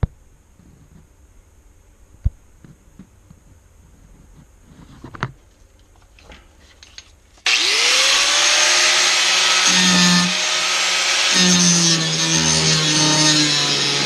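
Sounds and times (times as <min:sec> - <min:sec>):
power grinder grinding metal: 0:07.5 - 0:14.0.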